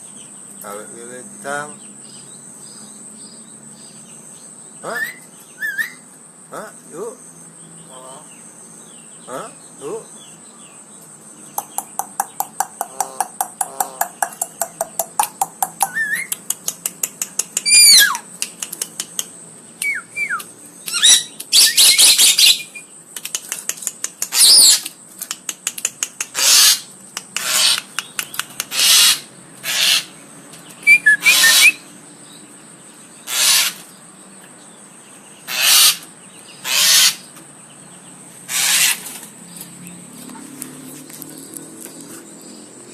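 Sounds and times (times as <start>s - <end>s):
myna bird calling: 4.8s - 10.4s, 11.4s - 34.1s, 34.9s - 40.6s.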